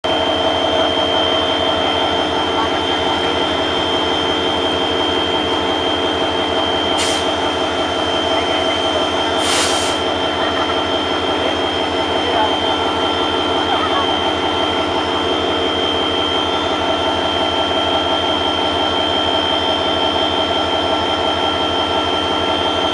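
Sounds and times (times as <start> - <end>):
locomotive engine droning: 0.0 - 22.9
short hisses: 7.0 - 7.3, 9.4 - 10.0.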